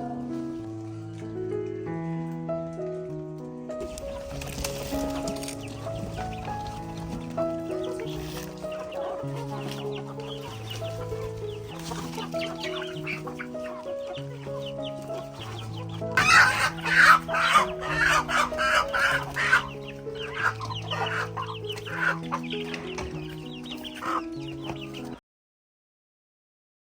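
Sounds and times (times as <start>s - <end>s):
chickens clucking: 3.8s - 25.2s.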